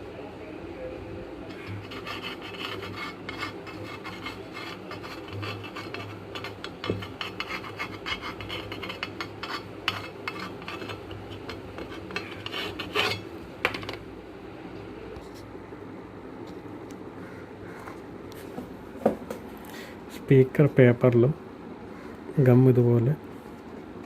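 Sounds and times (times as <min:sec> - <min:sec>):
sharp scrapes: 0:01.5 - 0:13.3
glue rubbing on paper cone: 0:01.6 - 0:13.0.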